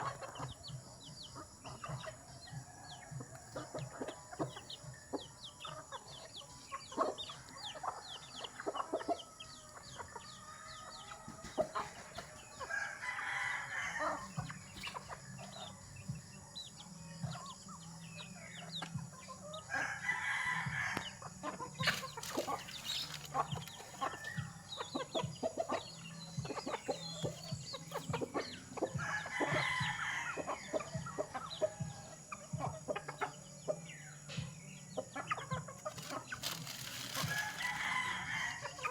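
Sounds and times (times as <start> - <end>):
chickens clucking and cheeping: 0.0 - 38.9
loud chicken calls: 35.8 - 38.9.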